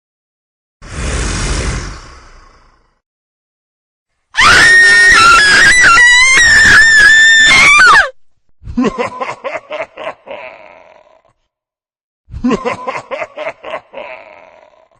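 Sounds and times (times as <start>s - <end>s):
shrill scream: 4.4s - 8.2s
snickering laugh: 8.7s - 11.2s, 12.4s - 14.9s.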